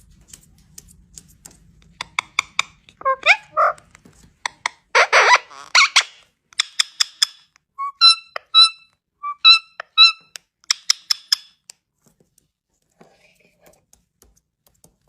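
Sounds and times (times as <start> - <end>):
parrot clicks: 0.3 - 4.8
parrot squawking: 2.0 - 3.9, 4.9 - 6.2, 7.8 - 10.3
parrot whistled chirps: 7.8 - 10.3.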